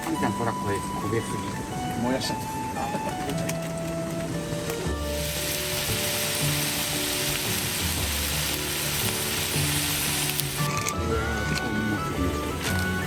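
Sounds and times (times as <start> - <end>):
background music: 0.0 - 13.0
food sizzling in a pan: 5.0 - 13.0.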